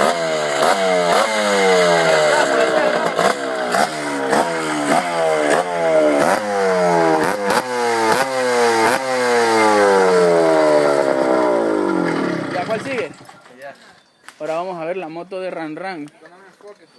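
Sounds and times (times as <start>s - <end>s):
motorcycle engine revving: 0.0s - 13.5s.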